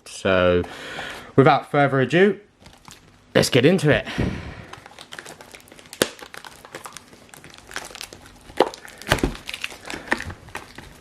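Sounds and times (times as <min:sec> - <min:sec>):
plastic shrink-wrap tearing: 0:02.6 - 0:03.2, 0:04.7 - 0:11.0.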